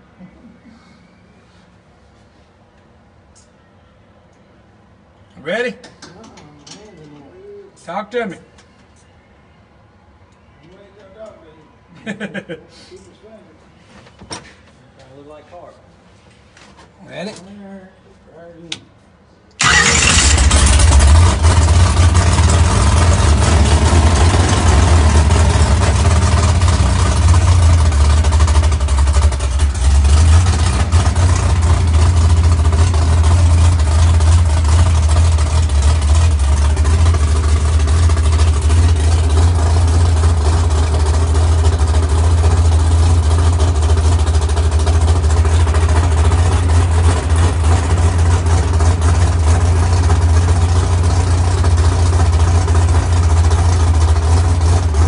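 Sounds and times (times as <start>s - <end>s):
race car engine idling: 19.6s - 55.0s.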